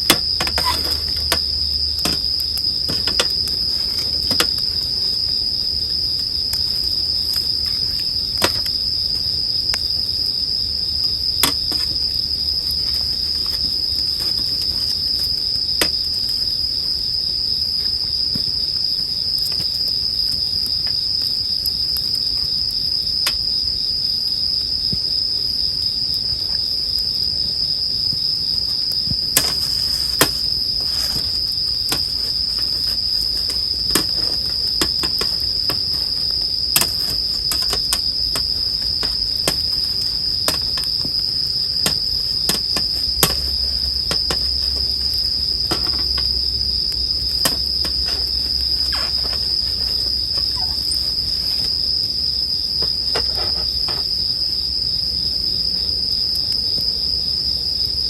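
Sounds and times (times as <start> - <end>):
crickets trilling: 0.0 - 58.0
campfire crackling and popping: 29.1 - 48.9.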